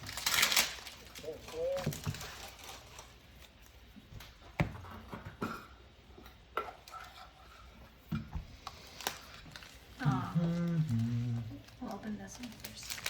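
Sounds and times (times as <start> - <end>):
trading card packs rustling: 0.0 - 3.9, 8.8 - 13.0.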